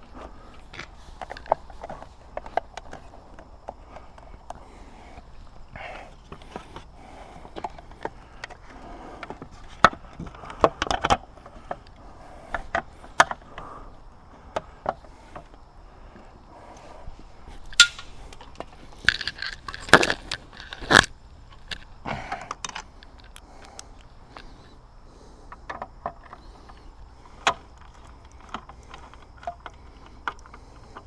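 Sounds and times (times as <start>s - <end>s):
plastic and metal parts clicking: 0.6s - 4.6s, 17.6s - 24.1s, 27.3s - 31.0s.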